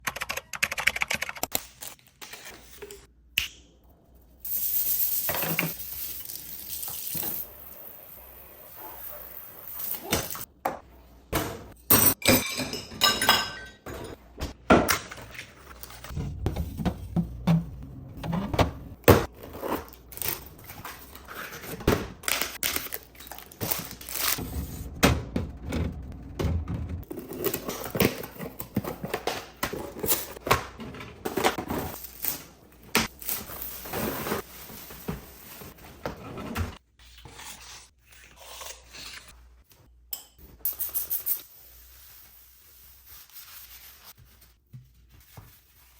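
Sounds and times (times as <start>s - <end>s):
dishes knocking and clinking: 16.3s - 19.3s.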